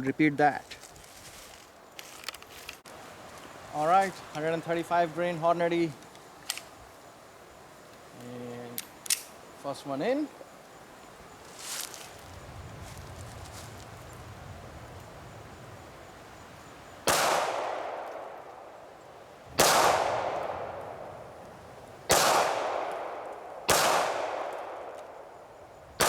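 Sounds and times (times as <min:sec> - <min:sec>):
pistol shots: 0:17.0 - 0:18.4, 0:19.6 - 0:21.0, 0:22.1 - 0:25.2.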